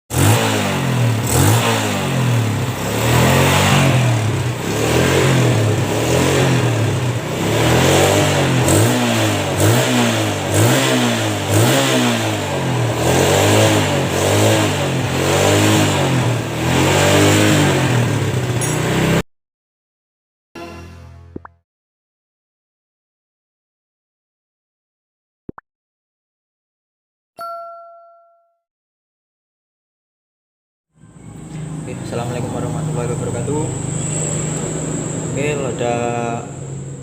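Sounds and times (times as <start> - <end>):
motorcycle engine revving: 0.1 - 19.2, 31.0 - 37.0.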